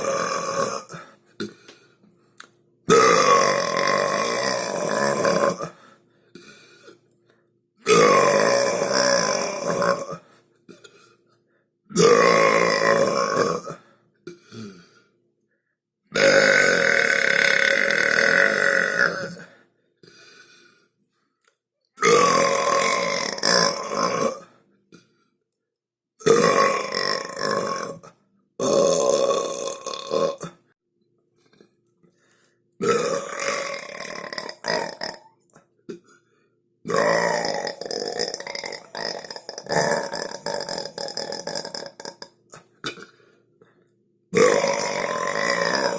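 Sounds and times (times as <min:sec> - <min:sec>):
person burping loudly: 0:00.0 - 0:01.6, 0:02.9 - 0:05.8, 0:07.8 - 0:11.0, 0:11.9 - 0:14.8, 0:16.1 - 0:19.5, 0:22.0 - 0:24.6, 0:26.2 - 0:30.7, 0:32.8 - 0:36.2, 0:36.8 - 0:43.2, 0:44.3 - 0:45.9.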